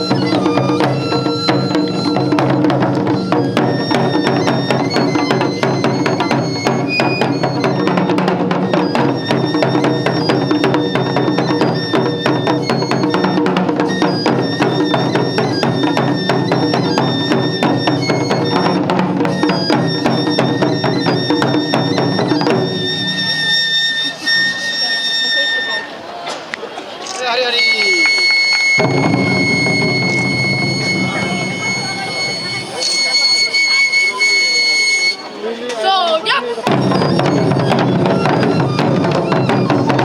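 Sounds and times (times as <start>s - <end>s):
rapid taiko drumming: 0.0s - 23.8s, 28.6s - 33.0s, 36.7s - 40.0s
high piping flute melody: 0.0s - 26.4s, 27.2s - 40.0s.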